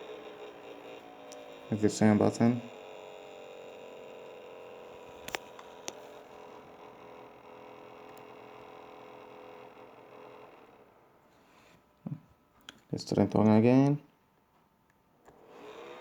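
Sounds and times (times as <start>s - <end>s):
laptop humming: 0.0s - 14.0s, 15.2s - 16.0s
short clicks: 5.0s - 6.1s.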